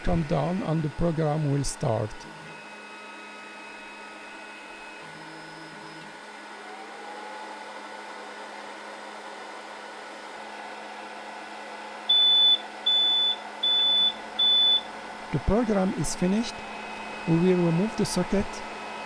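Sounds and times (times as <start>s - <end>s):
machine whirring: 0.0s - 6.8s, 12.1s - 19.0s
loud high beeps: 12.1s - 14.9s.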